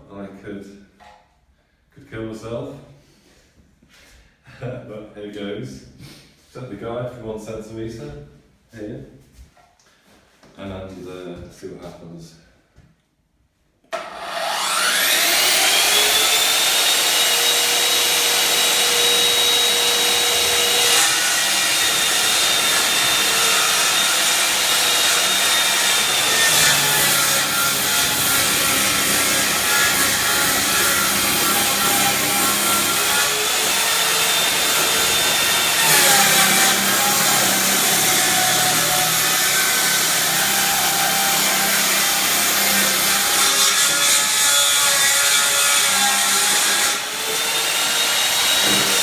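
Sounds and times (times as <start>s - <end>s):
circular saw cutting wood: 13.9s - 49.0s.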